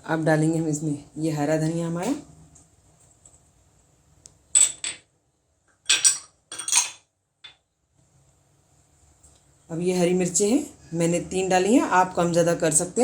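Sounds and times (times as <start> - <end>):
utensils clinking against bowl: 5.9 - 7.1.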